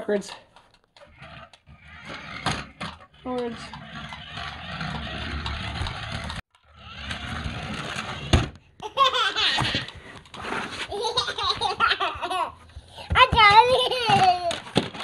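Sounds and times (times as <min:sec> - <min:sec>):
toy car whirring: 0:00.5 - 0:15.0
child laughing and squealing: 0:08.8 - 0:09.9.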